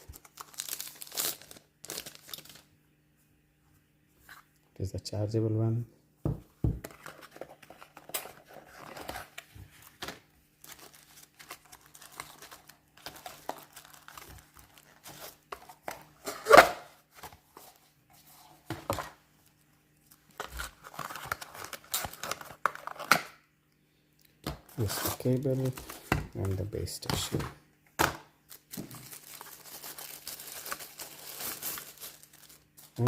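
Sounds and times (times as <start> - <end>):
plastic packaging crinkling and tearing: 0.0 - 2.7, 7.0 - 15.9, 20.1 - 23.2, 28.5 - 33.0.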